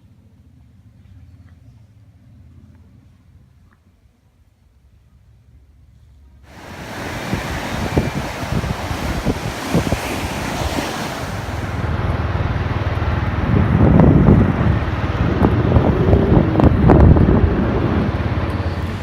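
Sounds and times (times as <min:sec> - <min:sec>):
wind buffeting microphone: 0:06.5 - 0:19.0.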